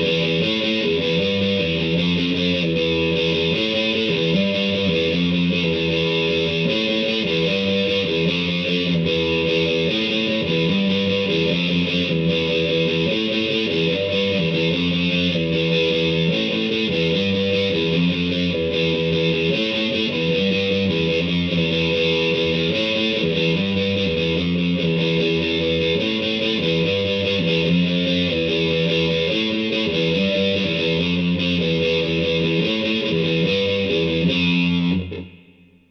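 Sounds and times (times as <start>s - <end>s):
distorted electric guitar: 0.0s - 35.9s.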